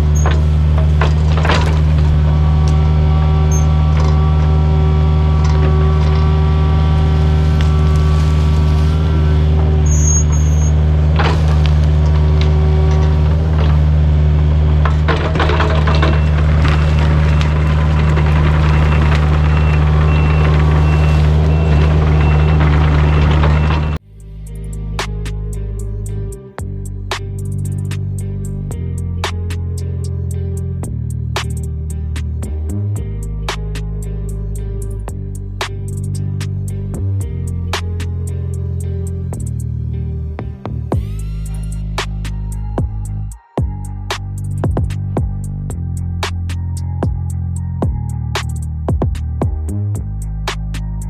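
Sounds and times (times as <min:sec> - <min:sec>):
sharp knocks and rattling: 0:00.0 - 0:02.8, 0:14.6 - 0:24.0
excavator diesel engine running: 0:00.0 - 0:40.4
guitar music: 0:00.0 - 0:51.0.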